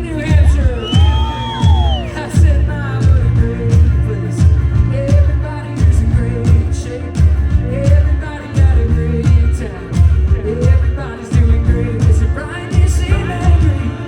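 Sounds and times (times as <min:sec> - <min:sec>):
kick drum beat: 0:00.0 - 0:13.8
person singing: 0:00.0 - 0:14.0
rock band playing: 0:00.0 - 0:14.0.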